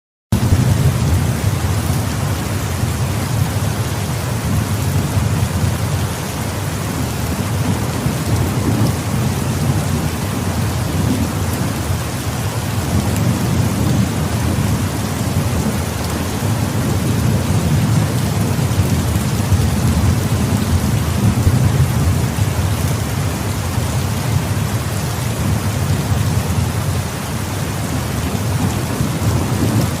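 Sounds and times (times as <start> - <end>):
heavy rain: 0.3 - 30.0
rolling thunder: 6.9 - 27.0, 27.8 - 30.0.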